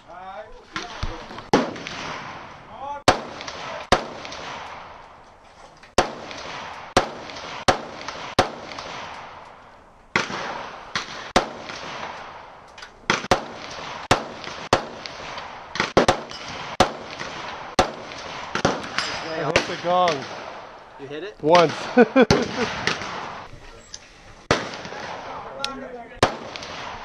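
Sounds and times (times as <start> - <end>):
gunshots with short echo: 21.6 - 23.5.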